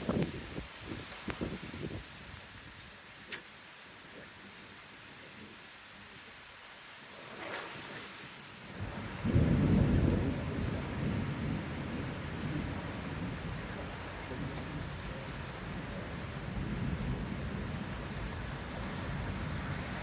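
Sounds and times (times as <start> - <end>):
heavy rain hissing: 0.0 - 20.0
low rumble of thunder: 8.8 - 20.0.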